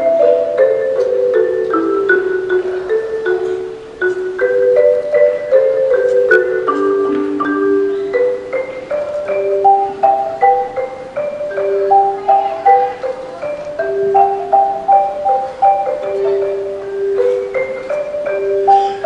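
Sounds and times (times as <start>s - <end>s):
marimba melody: 0.0s - 19.0s.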